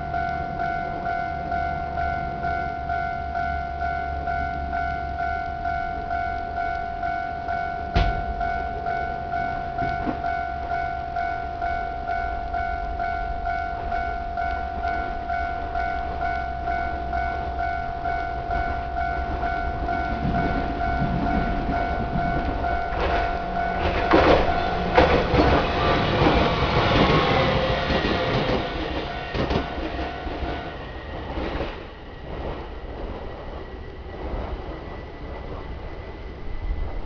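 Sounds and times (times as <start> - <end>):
level crossing bell ringing: 0.0 - 30.9
train wheels clattering: 18.5 - 33.3.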